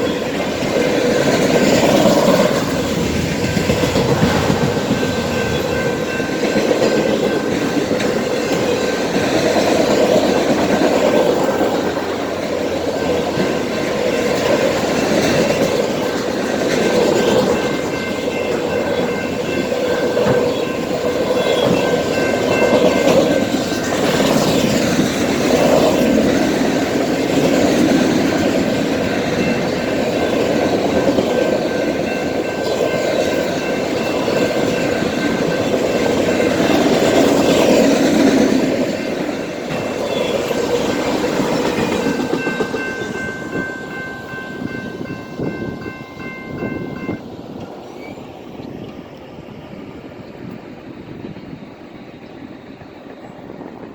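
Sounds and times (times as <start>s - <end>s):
freight train wheels rumbling: 0.0s - 53.9s
wind on microphone: 0.1s - 13.5s, 48.6s - 53.9s.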